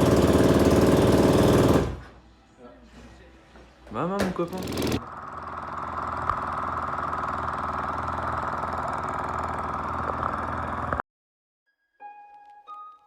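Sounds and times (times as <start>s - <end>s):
engine running with even pulse: 4.6s - 11.0s.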